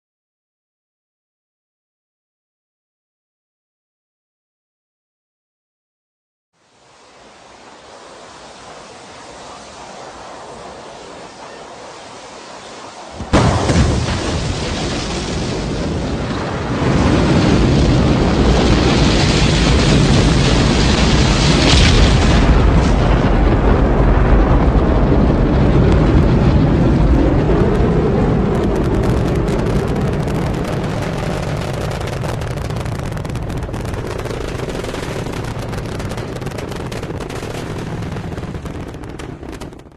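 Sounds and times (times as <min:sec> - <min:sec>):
rocket engine rumble: 0:07.0 - 0:39.9
sharp crackling: 0:13.2 - 0:39.9.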